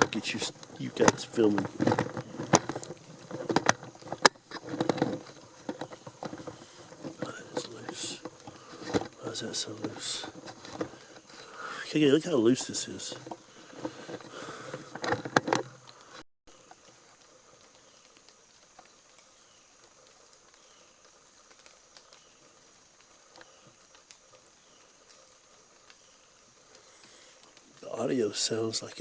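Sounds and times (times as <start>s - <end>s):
knocks and clicks of gear: 0.0s - 9.2s, 9.8s - 11.3s, 12.6s - 15.9s
faint outdoor background: 0.0s - 29.0s.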